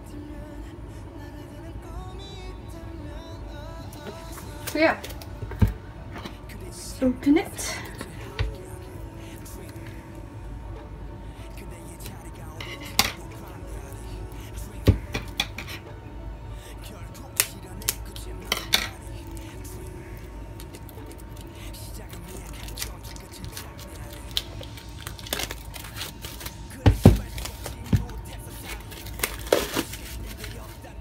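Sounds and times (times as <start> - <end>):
cardboard packaging clicks: 22.2 - 30.8.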